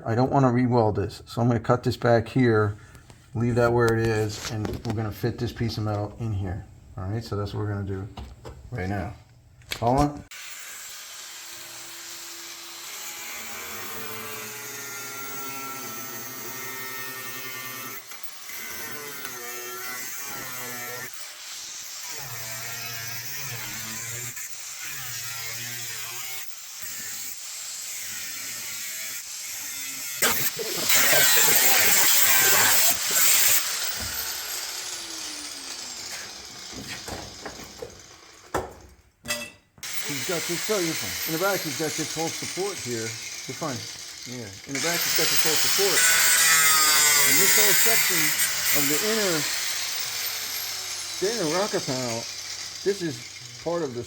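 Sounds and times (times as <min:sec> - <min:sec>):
power tool motor buzzing: 0:10.3 - 0:38.9, 0:39.8 - 0:54.0
metal knocks and clicks: 0:36.7 - 0:39.6.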